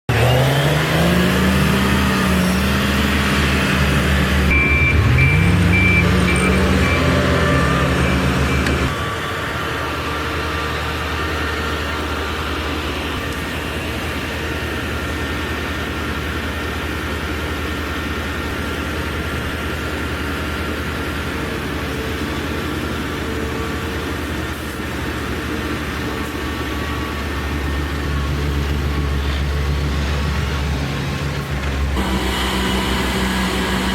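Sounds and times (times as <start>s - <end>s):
snow removal machine engines: 0.0s - 33.9s
reversing alarm beeping: 4.5s - 9.9s.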